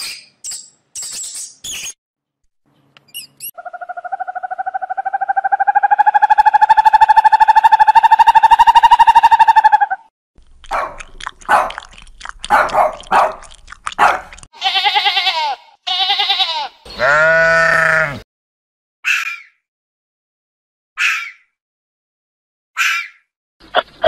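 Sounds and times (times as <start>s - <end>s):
animal calls: 3.6s - 10.1s.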